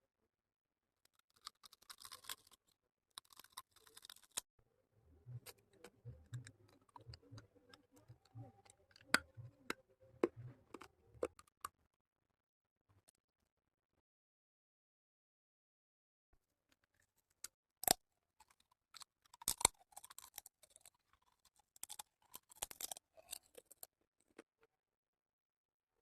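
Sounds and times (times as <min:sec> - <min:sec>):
crunchy eating noise: 0:01.1 - 0:02.6, 0:03.2 - 0:04.4, 0:17.8 - 0:24.4
chewing with wet mouth clicks: 0:01.2 - 0:02.6, 0:05.4 - 0:11.5, 0:17.8 - 0:23.9.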